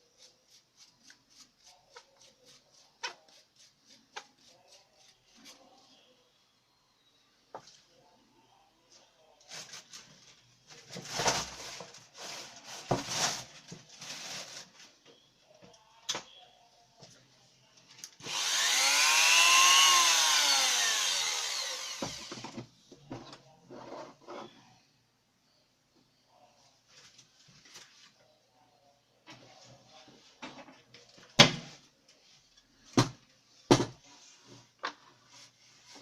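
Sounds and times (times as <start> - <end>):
rotary tool cutting wood: 18.2 - 22.4.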